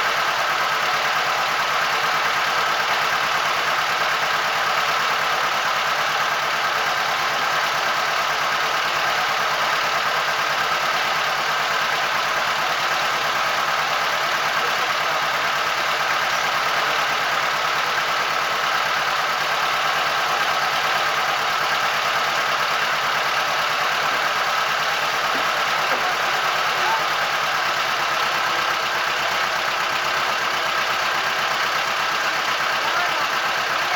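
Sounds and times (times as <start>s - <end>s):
boat engine droning: 21.6s - 30.4s.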